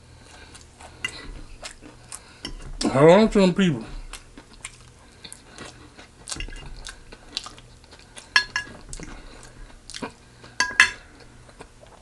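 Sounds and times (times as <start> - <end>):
chewing and biting chicken: 0.2 - 3.0, 3.9 - 10.6.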